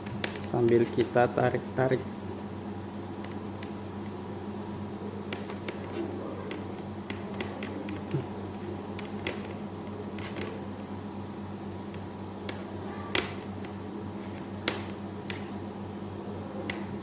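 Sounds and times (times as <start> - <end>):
electrical hum: 0.0 - 17.0
cable wires clicking: 5.3 - 10.6.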